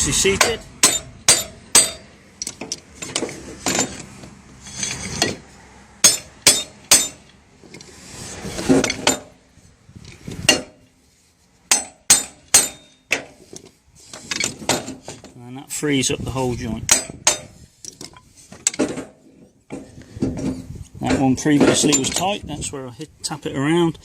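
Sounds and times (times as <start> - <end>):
hammer striking metal: 0.3 - 2.6, 6.0 - 7.2, 11.7 - 13.3, 16.9 - 17.5.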